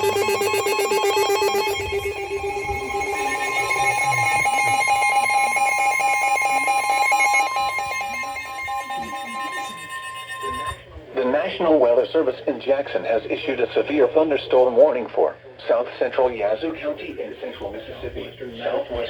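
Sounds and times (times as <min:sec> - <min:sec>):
pulsing electronic alert warble: 0:00.0 - 0:10.8
steady alarm tone: 0:00.0 - 0:11.0.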